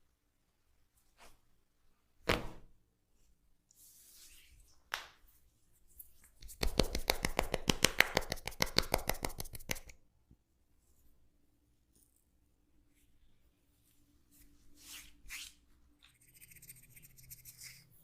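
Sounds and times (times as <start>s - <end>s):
hand slaps: 4.9s - 5.2s, 6.4s - 9.9s.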